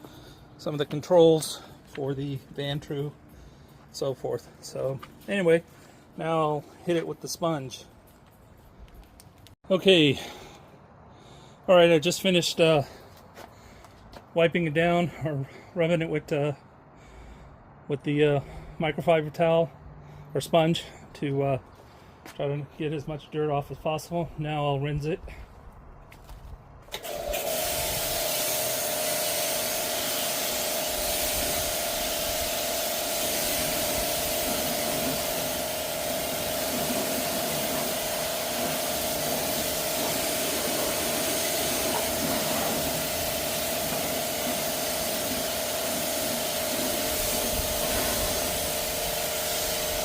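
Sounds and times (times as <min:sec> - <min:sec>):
motor hum: 0:26.9 - 0:50.0
pressure washer spraying: 0:26.9 - 0:50.0.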